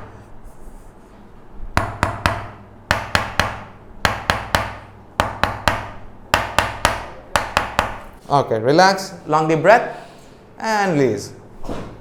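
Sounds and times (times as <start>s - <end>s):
sharp knocks: 1.8s - 8.1s.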